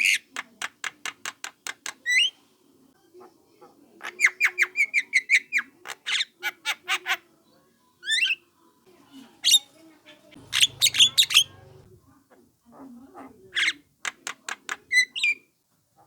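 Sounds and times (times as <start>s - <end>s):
myna squawking calls: 10.4s - 11.9s.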